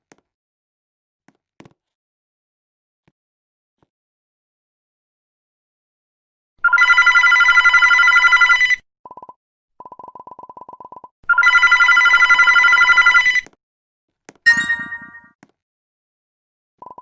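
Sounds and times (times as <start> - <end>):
telephone ringing: 11.4 - 13.2, 14.5 - 15.3
sharp metallic clink: 14.5 - 15.3.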